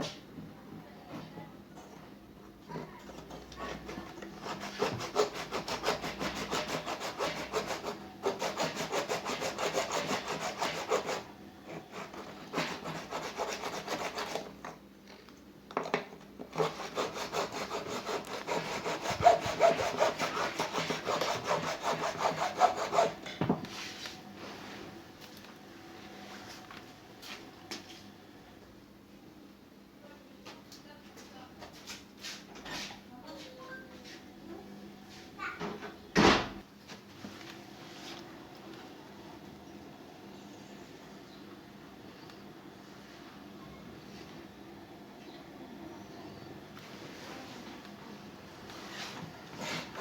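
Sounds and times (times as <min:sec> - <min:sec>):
tool rasping against hard material: 0:03.1 - 0:14.5, 0:16.5 - 0:23.2, 0:49.6 - 0:50.0.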